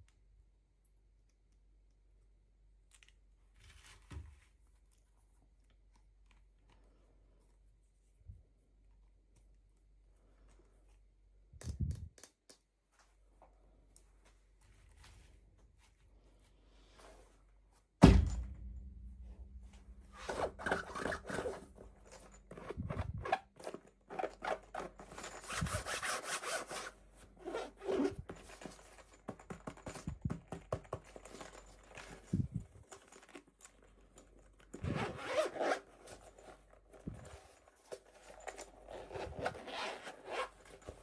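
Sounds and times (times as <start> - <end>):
sharp knock: 18.0 - 18.8.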